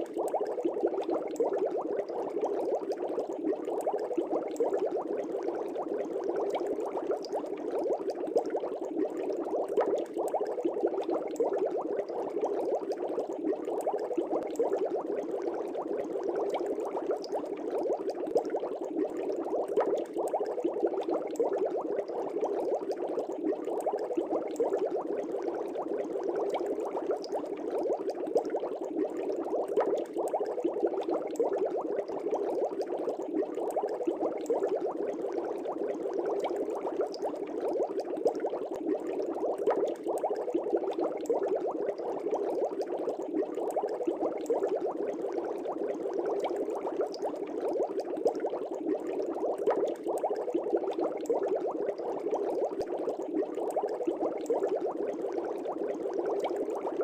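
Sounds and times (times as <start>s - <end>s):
air bubbles burbling in fish tank: 0.0s - 57.0s.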